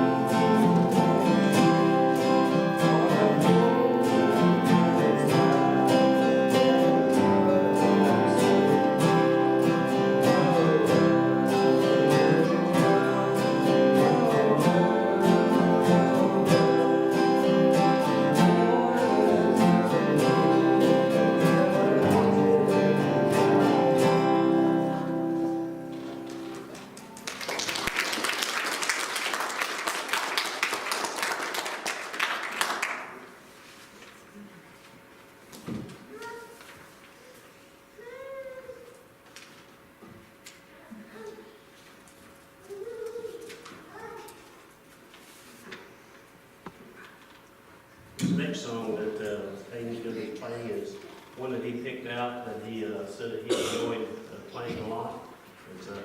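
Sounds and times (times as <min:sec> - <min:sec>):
live guitar piece: 0:00.0 - 0:28.4
audience applause: 0:26.2 - 0:33.4.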